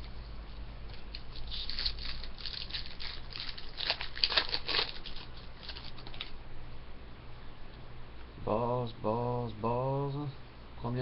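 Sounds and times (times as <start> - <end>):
cards flicking and rustling: 0.9 - 6.4.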